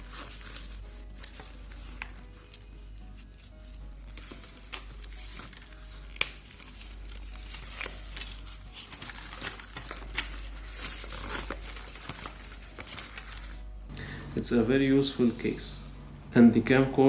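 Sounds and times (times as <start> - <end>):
case and packaging crinkling: 0.0 - 14.3
low steady hum: 13.6 - 17.0.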